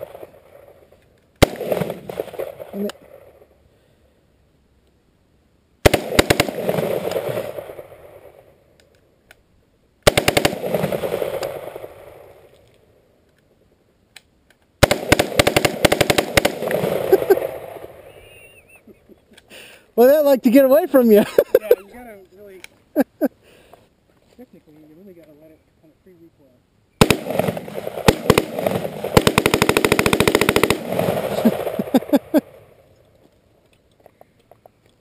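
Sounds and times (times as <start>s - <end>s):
gunshot echo: 1.4s - 3.2s, 27.0s - 31.9s
rifle firing rapid bursts: 5.8s - 7.7s, 10.1s - 11.8s, 14.8s - 17.5s, 27.0s - 32.0s.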